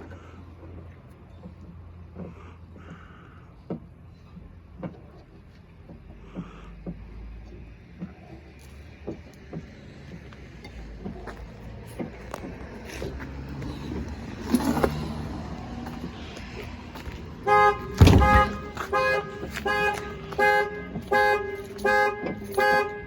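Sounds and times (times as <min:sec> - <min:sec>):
car horn: 0:17.4 - 0:23.0.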